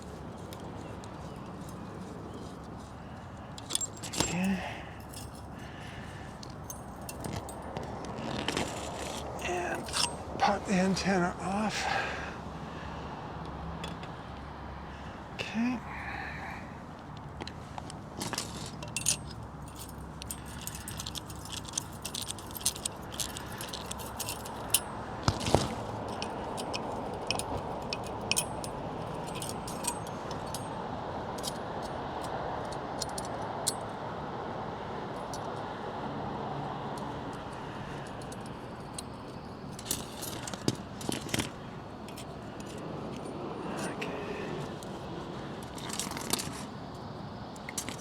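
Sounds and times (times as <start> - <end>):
small metal parts clinking: 1.2 - 10.3, 18.2 - 30.8, 37.3 - 44.0, 45.6 - 46.7, 47.6 - 48.0.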